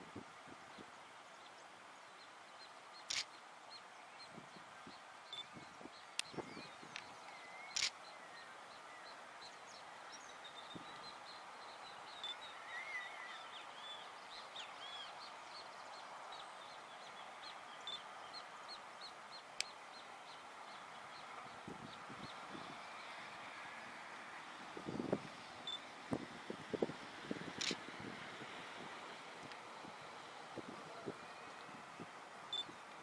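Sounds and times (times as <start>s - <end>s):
faint outdoor hiss: 0.0s - 33.0s
small birds chirping: 0.7s - 23.4s
sharp click: 3.1s - 3.3s, 7.7s - 8.0s, 27.6s - 27.8s.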